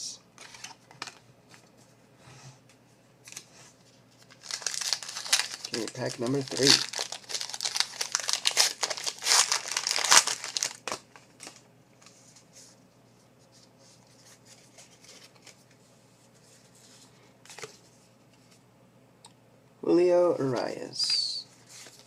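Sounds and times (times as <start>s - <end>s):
card pack wrapper tearing: 4.2s - 11.6s.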